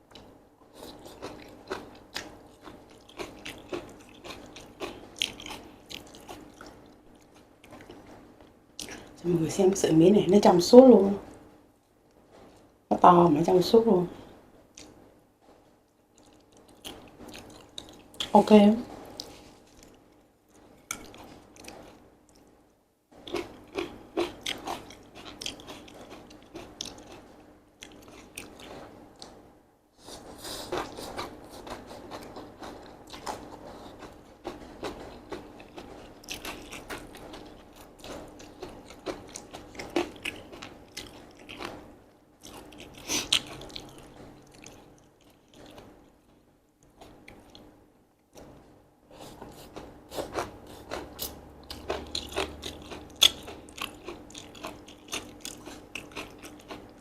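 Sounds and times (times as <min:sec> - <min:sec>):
wet mouth chewing noodles: 0:00.1 - 0:08.2, 0:16.1 - 0:18.4, 0:19.0 - 0:22.5, 0:23.2 - 0:29.4, 0:30.1 - 0:46.1, 0:48.4 - 0:57.0.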